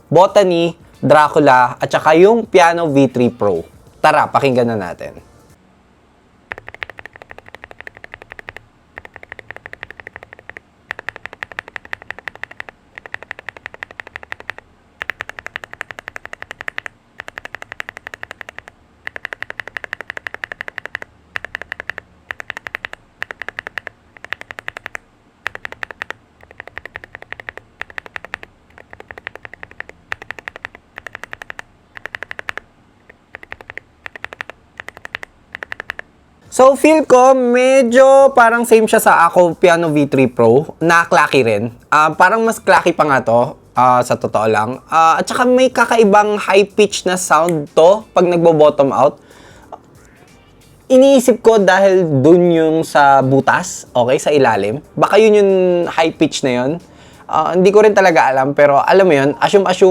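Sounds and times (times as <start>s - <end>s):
fast mechanical keyboard typing: 6.5s - 36.1s.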